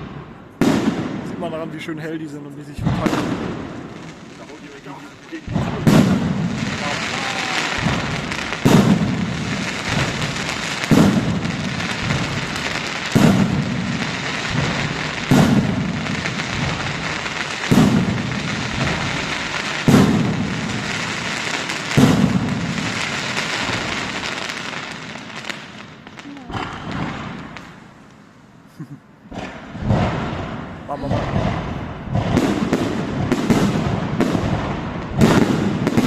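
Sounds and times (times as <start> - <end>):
firework shells booming: 0.0 - 36.0
steady noisy din: 4.6 - 21.1.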